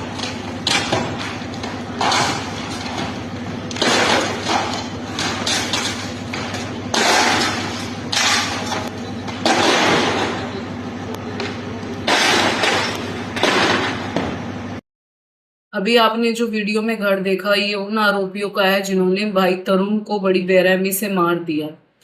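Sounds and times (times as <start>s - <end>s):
masonry crashing and rubble falling: 0.0s - 10.5s, 12.1s - 14.0s
bulldozer engine hum: 0.0s - 14.6s.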